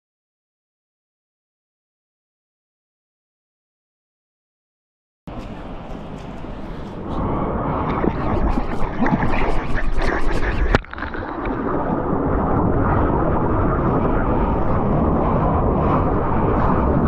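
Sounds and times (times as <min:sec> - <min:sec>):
wind on microphone: 0:05.3 - 0:17.0
sea water splashing: 0:05.4 - 0:17.0.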